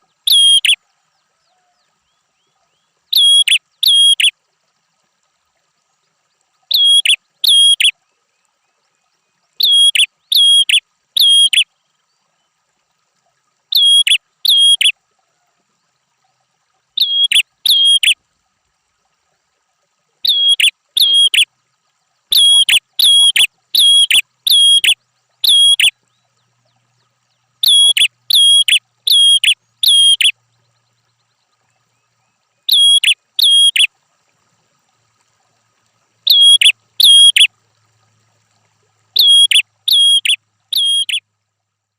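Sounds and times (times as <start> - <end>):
bird whistling sharp notes: 0.3 - 0.8, 6.7 - 7.9, 13.7 - 14.9, 27.6 - 30.3, 32.7 - 33.9, 36.3 - 37.5, 39.2 - 41.2.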